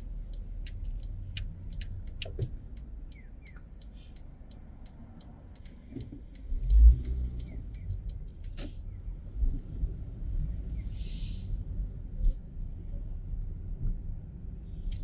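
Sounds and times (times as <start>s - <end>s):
short hiss: 10.9s - 11.6s.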